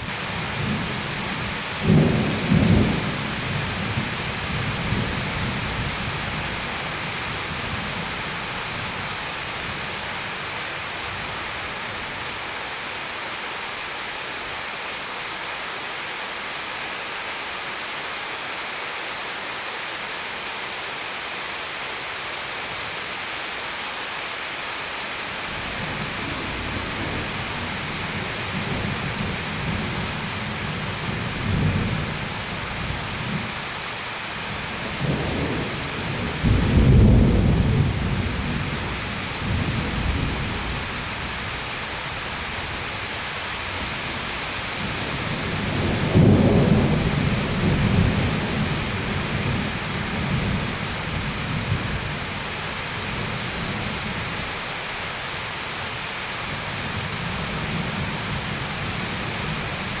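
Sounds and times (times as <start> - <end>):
heavy rain hissing: 0.0 - 60.0
thunder rumbling: 0.1 - 6.6, 34.8 - 41.0, 44.8 - 52.1.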